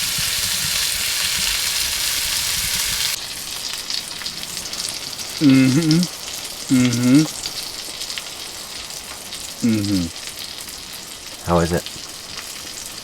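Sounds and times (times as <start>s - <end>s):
steak sizzling: 0.0s - 13.0s
person humming: 5.4s - 6.1s, 6.7s - 7.3s, 9.6s - 10.1s, 11.5s - 11.8s.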